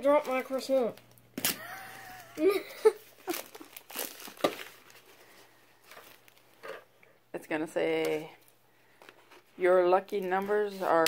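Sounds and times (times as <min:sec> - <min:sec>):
plastic packaging crinkling and tearing: 0:00.0 - 0:06.7.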